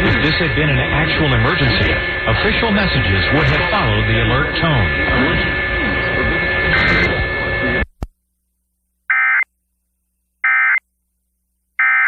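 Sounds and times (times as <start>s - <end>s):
buzzy warbling data bursts: 0.0s - 7.8s.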